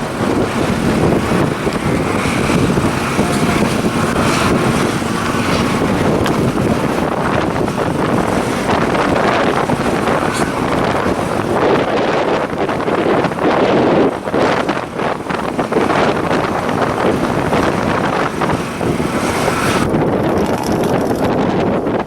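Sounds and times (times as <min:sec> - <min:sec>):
strong wind buffeting microphone: 0:00.0 - 0:22.0.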